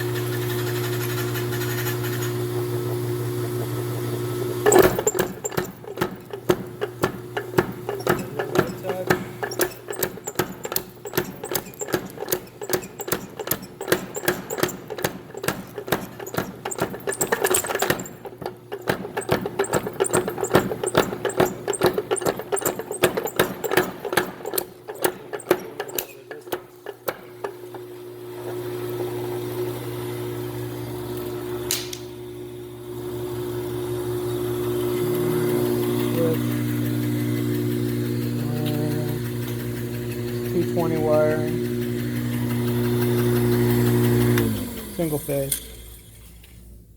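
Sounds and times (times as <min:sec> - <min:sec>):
electric motor humming: 0:00.0 - 0:46.1
sharp click: 0:31.7 - 0:32.1.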